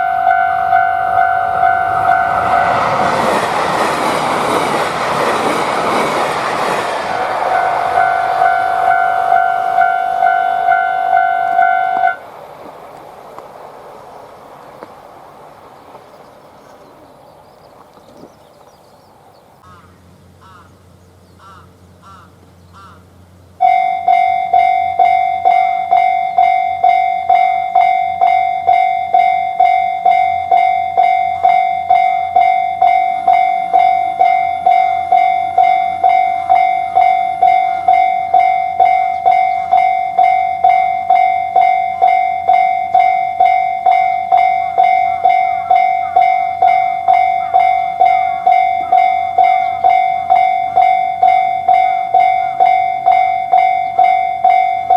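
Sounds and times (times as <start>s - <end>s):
level crossing alarm ringing: 0.0s - 4.0s, 7.1s - 12.2s, 23.6s - 54.9s.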